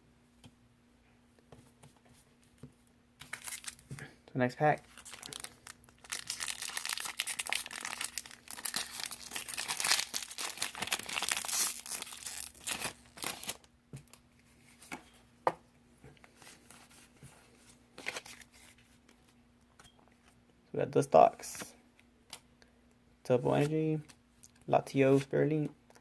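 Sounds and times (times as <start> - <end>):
foil wrapper tearing and crinkling: 3.3 - 3.8, 4.9 - 13.6.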